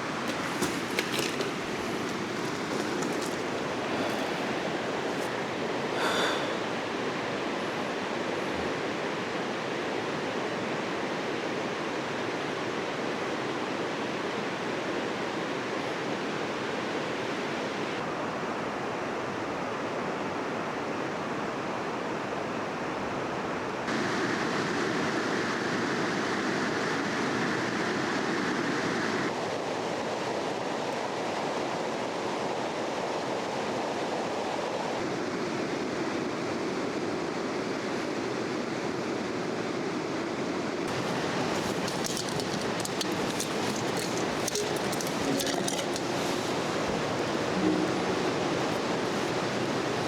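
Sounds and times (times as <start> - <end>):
stream water rushing: 0.0 - 7.8, 40.9 - 50.0
faint clicks: 40.9 - 50.0.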